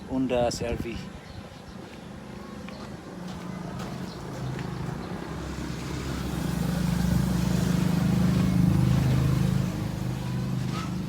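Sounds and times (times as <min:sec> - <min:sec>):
vehicle engine humming: 0:03.0 - 0:11.0.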